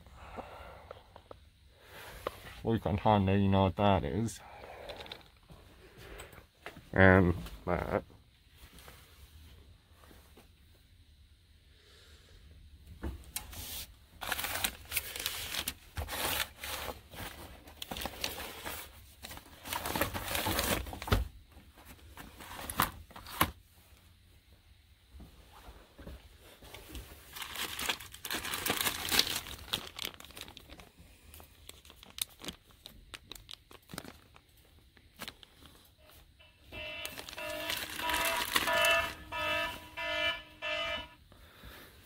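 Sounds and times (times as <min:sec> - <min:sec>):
crinkling handling noise: 0:04.5 - 0:10.8, 0:13.2 - 0:24.2, 0:25.2 - 0:42.0.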